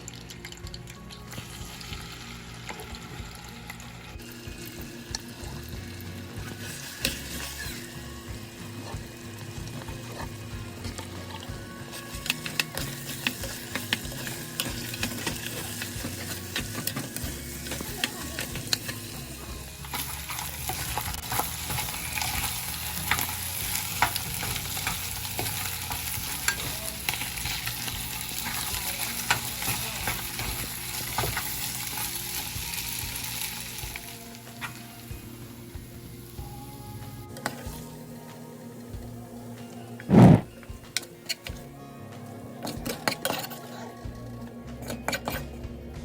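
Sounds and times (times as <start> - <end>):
food sizzling in a pan: 0.0 - 39.0.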